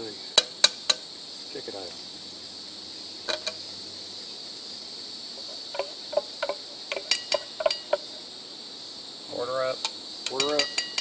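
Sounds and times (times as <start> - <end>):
insects chirring: 0.0 - 11.0
utensil clinking on pot: 5.7 - 8.1, 9.8 - 11.0.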